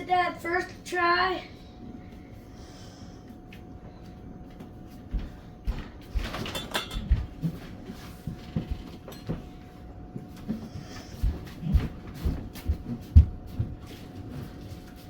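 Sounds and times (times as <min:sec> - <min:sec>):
faint steady hum: 0:00.0 - 0:15.0
dishes and utensils clattering: 0:06.2 - 0:07.6.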